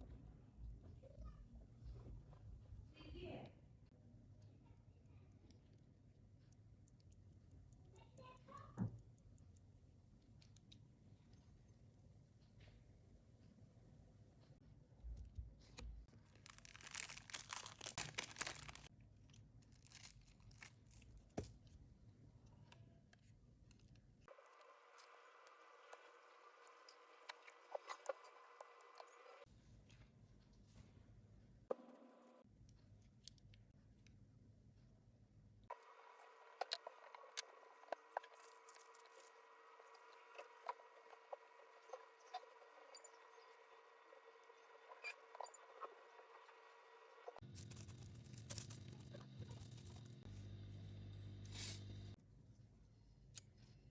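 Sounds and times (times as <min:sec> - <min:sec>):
crinkling and tearing: 0:16.1 - 0:21.4, 0:47.4 - 0:50.3.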